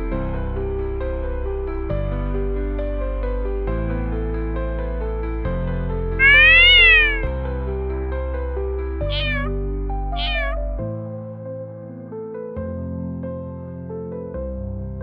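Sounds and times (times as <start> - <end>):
cat meowing: 6.2 - 7.3, 9.1 - 9.6, 10.2 - 10.6.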